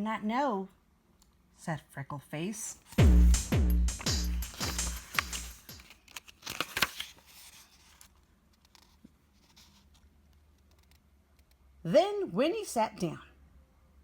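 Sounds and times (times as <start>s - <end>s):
deep electronic booms: 3.0s - 4.5s
paper rustling and crinkling: 4.0s - 10.1s.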